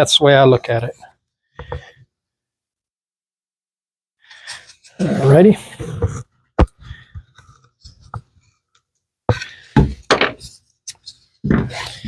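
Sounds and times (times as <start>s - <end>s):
wooden pieces knocking together: 9.8s - 10.5s.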